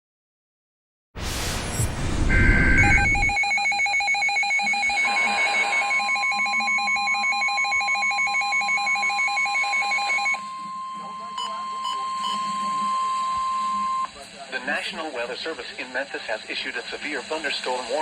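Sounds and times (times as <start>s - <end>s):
digital data burst: 1.2s - 7.0s
pulsing two-pitch alert tone: 1.2s - 7.3s
steady warning alarm tone: 2.2s - 14.1s.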